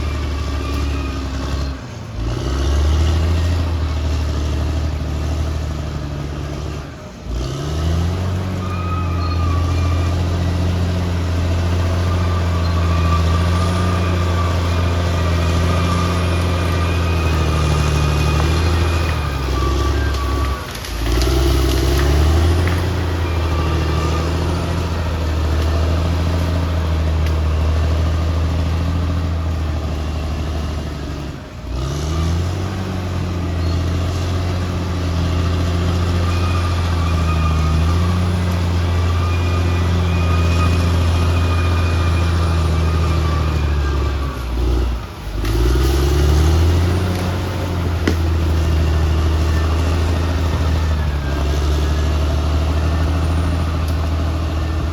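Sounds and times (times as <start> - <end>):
bulldozer diesel engine revving: 0.0 - 54.9.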